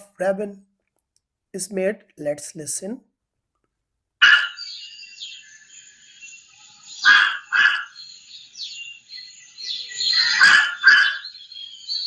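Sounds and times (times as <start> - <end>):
raven croaking: 4.2 - 12.0
small birds chirping: 4.2 - 12.0.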